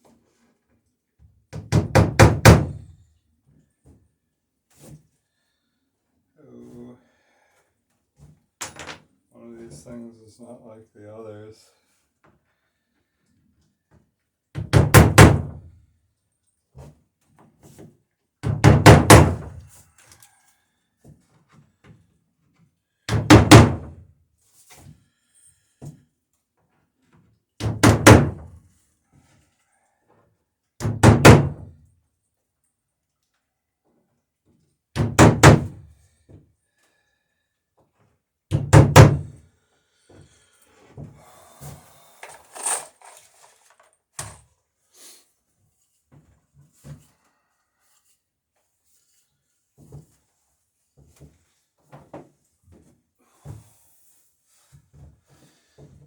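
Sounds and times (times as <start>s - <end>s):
hammer striking wooden planks: 1.8s - 2.8s, 14.8s - 15.6s, 18.6s - 19.6s, 23.1s - 23.9s, 27.7s - 28.4s, 31.0s - 31.6s, 35.0s - 35.8s.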